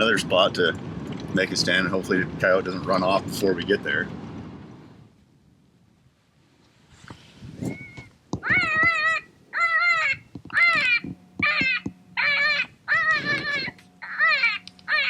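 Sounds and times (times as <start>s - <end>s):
predator call distress cries: 7.7s - 15.0s.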